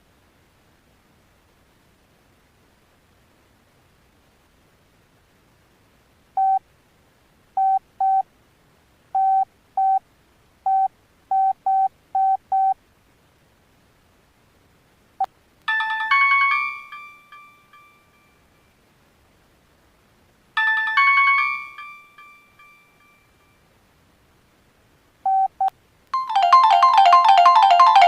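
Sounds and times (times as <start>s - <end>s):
ringtone chime: 15.7s - 18.5s, 20.6s - 23.6s, 26.2s - 28.0s.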